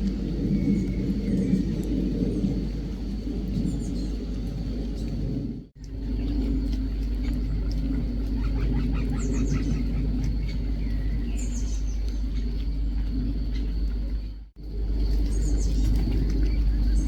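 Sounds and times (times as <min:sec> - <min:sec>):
low rumble: 0:00.0 - 0:17.0
birds chattering: 0:08.3 - 0:13.8
high bird calls: 0:08.4 - 0:12.6.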